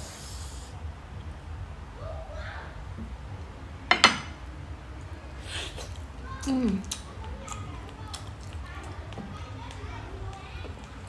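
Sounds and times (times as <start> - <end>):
steady low hum: 0.0 - 11.0
hard object clinking on dish: 3.9 - 4.4.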